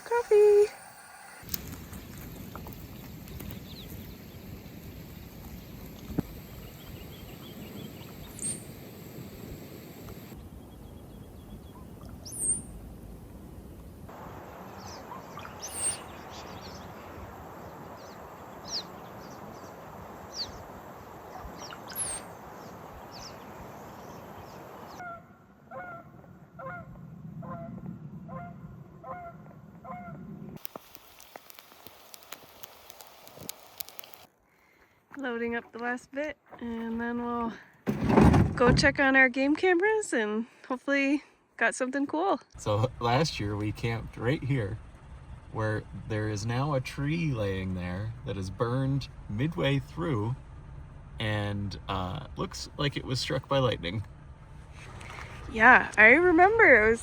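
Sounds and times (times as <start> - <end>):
steady background hiss: 0.0 - 10.6, 30.6 - 34.3
birds chirping: 0.0 - 12.8, 14.1 - 25.2, 30.6 - 34.3, 42.6 - 54.2
repeated pitched bird calls: 2.8 - 12.7, 14.6 - 25.2.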